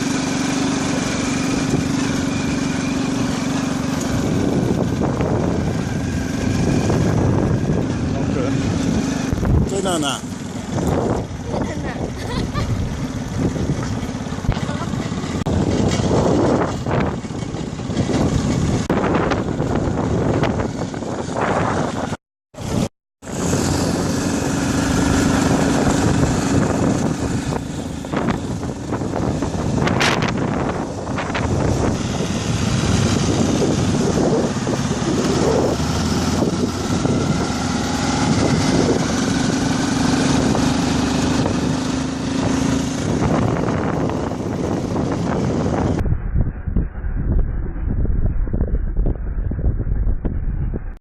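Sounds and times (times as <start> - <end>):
motorbike engine running: 0.0 - 51.0
wind buffeting microphone: 0.0 - 51.0.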